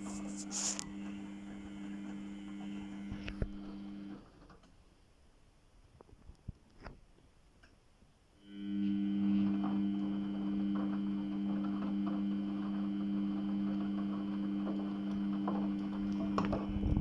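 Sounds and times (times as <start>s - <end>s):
washing machine hum: 0.0s - 4.9s, 8.5s - 17.0s.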